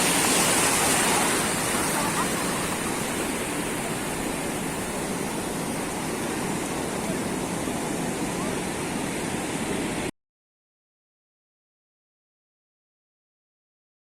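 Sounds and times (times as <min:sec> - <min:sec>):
sea surf rushing on beach: 0:00.0 - 0:10.1.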